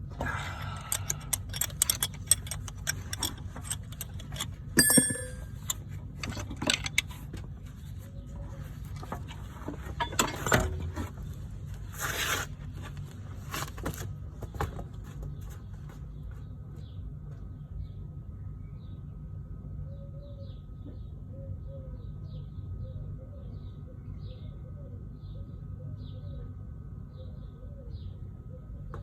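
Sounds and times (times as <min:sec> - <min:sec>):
metal tools clinking and scraping: 0:00.7 - 0:07.2, 0:09.8 - 0:11.2.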